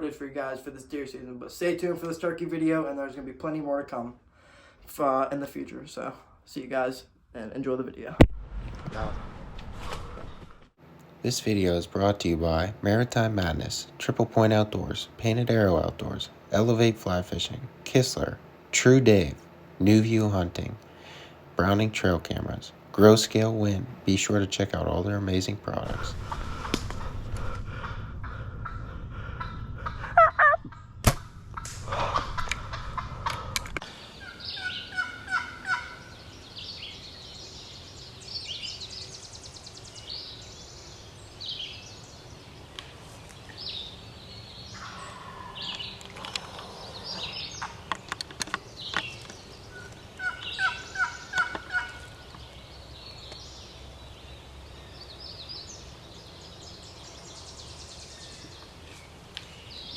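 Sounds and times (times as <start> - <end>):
wild turkey gobbling: 27.8 - 30.9, 31.5 - 36.2, 44.8 - 47.9, 49.7 - 52.4.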